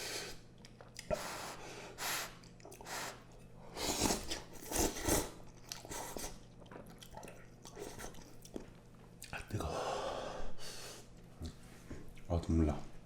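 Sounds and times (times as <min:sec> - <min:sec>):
person chewing noodles: 0:00.2 - 0:01.6, 0:02.2 - 0:09.4.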